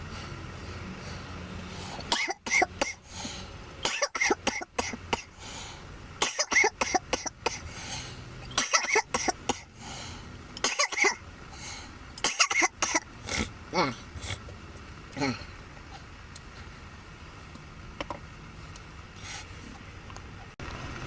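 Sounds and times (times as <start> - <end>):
man coughing harshly: 2.1 - 3.0, 3.8 - 5.3, 6.2 - 7.6, 8.6 - 9.7, 10.6 - 11.2, 12.2 - 13.1.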